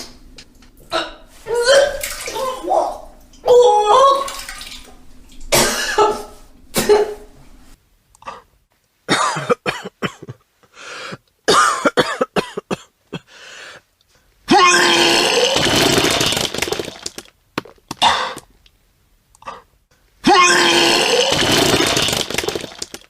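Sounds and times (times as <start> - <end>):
person retching and vomiting: 5.5 - 7.2, 14.5 - 18.5, 19.4 - 23.0.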